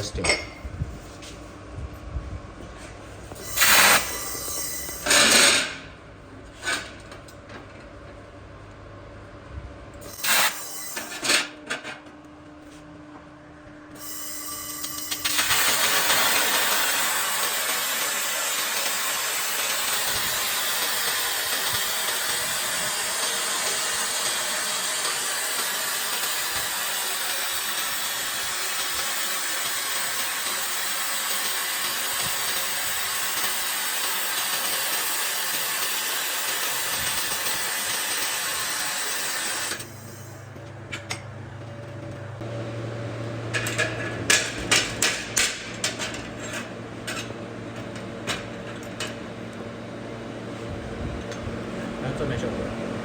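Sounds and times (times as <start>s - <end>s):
laser welder hissing: 3.4s - 5.9s, 10.0s - 11.1s, 14.0s - 40.4s.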